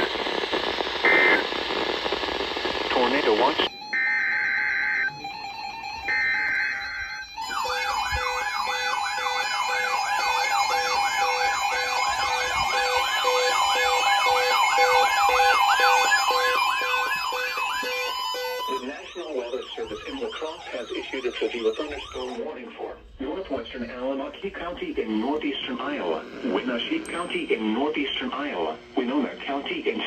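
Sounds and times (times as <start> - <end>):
buzzy digital data bursts: 0.0 - 3.6, 4.6 - 30.0
steady electronic tone: 3.7 - 30.0
warbling alert tone: 14.9 - 22.5.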